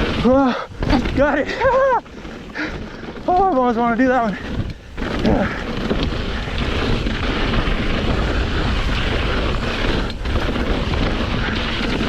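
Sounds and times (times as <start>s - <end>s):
bike rattling over rocks: 0.0s - 12.0s
bike tyres rumbling on dirt: 0.0s - 12.0s
wind buffeting microphone: 0.0s - 12.0s.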